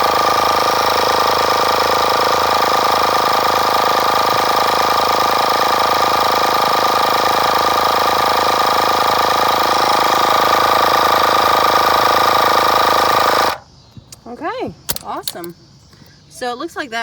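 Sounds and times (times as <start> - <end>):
air compressor whining: 0.0 - 16.2.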